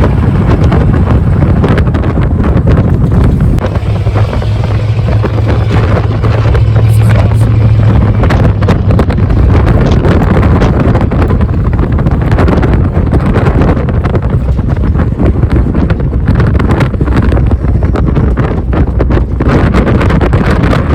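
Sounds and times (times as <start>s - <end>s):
truck engine exhaust drone: 0.0s - 20.9s
wind buffeting microphone: 0.0s - 20.9s.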